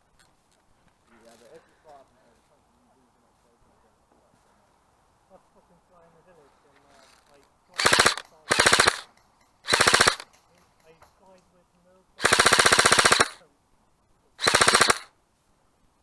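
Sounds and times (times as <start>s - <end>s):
airsoft rifle automatic bursts: 7.8s - 10.3s, 12.2s - 13.4s, 14.4s - 15.1s.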